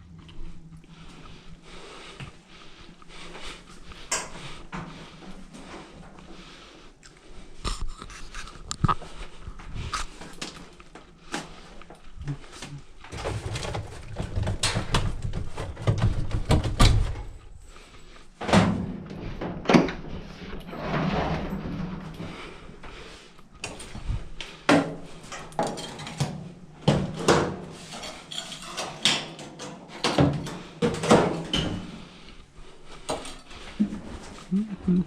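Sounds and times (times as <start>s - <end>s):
knocks and clunks of dryer parts: 13.1s - 17.5s, 18.4s - 20.2s, 24.6s - 32.0s.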